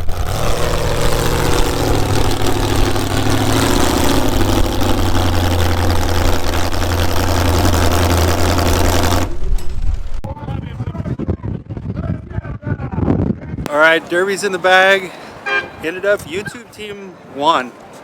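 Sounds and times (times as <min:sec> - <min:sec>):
car engine running loud: 0:00.0 - 0:10.4.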